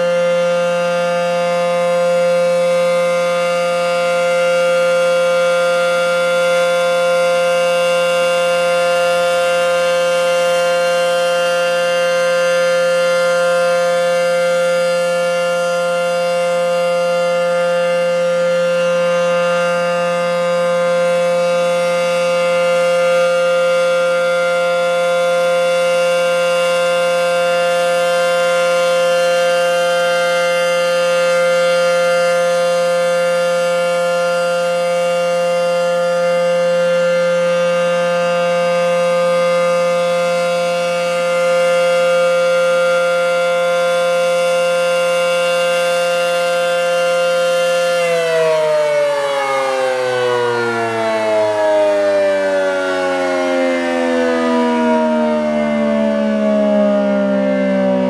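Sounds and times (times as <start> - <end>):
warning siren steady tone: 0.0 - 58.0.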